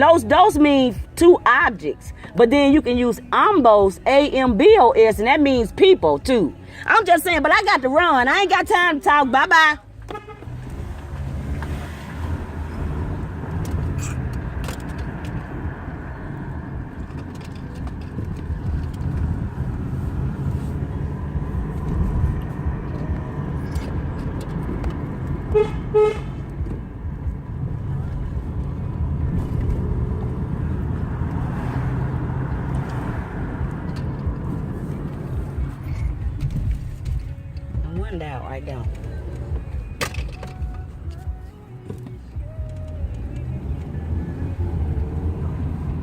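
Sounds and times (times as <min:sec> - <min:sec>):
car engine rumble: 0:00.0 - 0:46.0
car horn toots: 0:08.5 - 0:10.7, 0:25.4 - 0:26.7.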